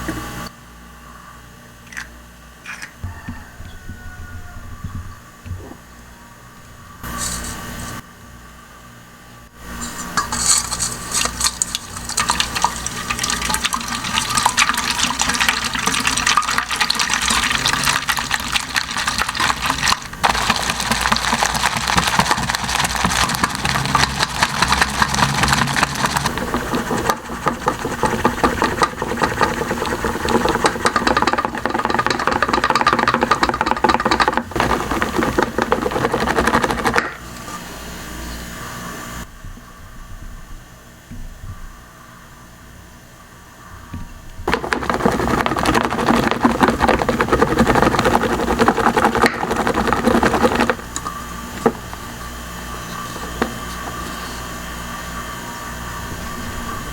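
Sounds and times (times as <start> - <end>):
eggs whisked in a bowl: 10.2 - 37.4, 44.5 - 54.5.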